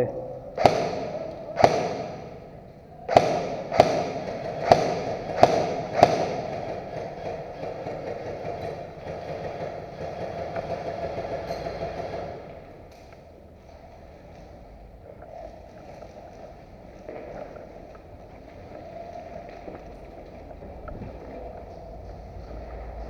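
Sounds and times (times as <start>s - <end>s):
airsoft gun shots: 0.6s - 8.2s.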